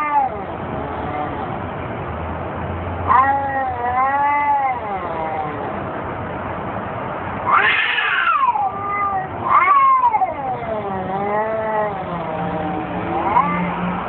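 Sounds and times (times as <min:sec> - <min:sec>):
cats yowling in a fight: 0:00.0 - 0:01.6, 0:03.1 - 0:05.8, 0:07.4 - 0:14.0.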